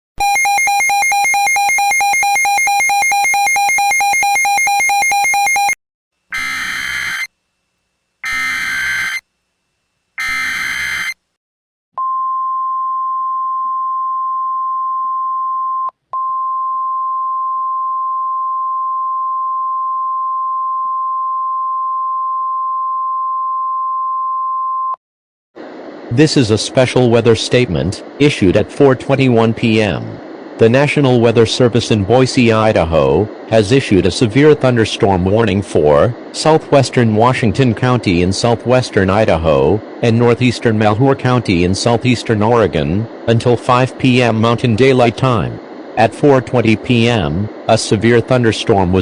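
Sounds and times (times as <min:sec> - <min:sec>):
long steady high beep: 0:00.2 - 0:07.3, 0:08.2 - 0:09.2, 0:10.2 - 0:11.2, 0:12.0 - 0:25.0
buzzy pulsing tone: 0:06.3 - 0:07.3, 0:08.2 - 0:09.2, 0:10.2 - 0:11.2
screechy data bursts: 0:06.3 - 0:07.3, 0:08.2 - 0:09.2, 0:10.2 - 0:11.2.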